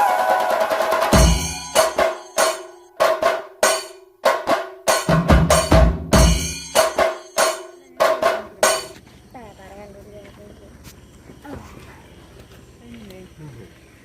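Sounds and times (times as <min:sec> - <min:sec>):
percussion-led background music: 0:00.0 - 0:09.0.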